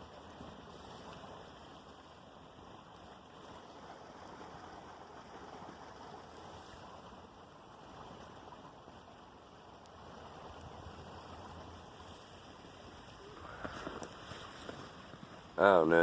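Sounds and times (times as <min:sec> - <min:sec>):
outdoor background rushing noise: 0:00.0 - 0:16.0.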